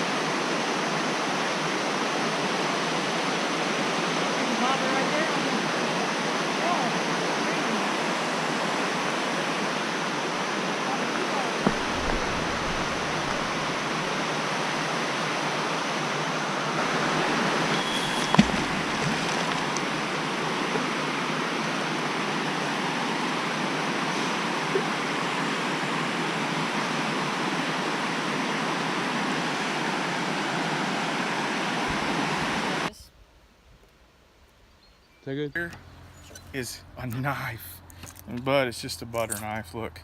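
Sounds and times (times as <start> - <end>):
water rushing down a culvert: 0.0 - 32.9.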